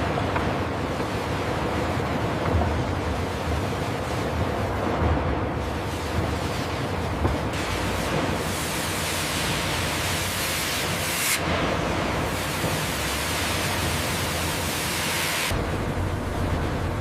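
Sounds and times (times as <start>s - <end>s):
sawmill machinery rushing: 5.8s - 17.0s.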